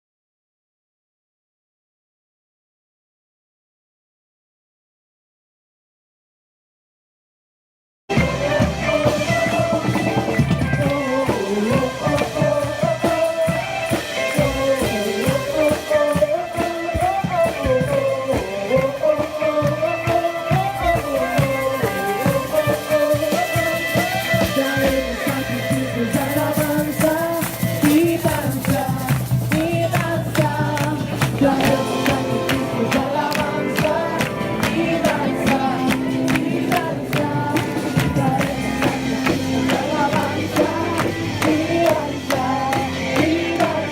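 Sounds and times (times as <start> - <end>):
singing over guitar and drums: 8.1 - 43.9.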